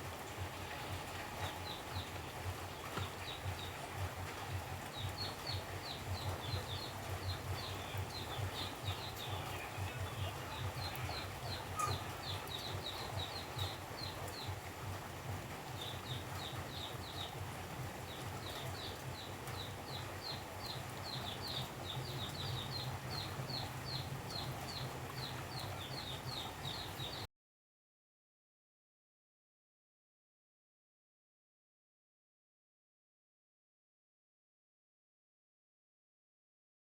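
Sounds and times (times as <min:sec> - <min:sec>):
rain hissing: 0:00.0 - 0:27.2.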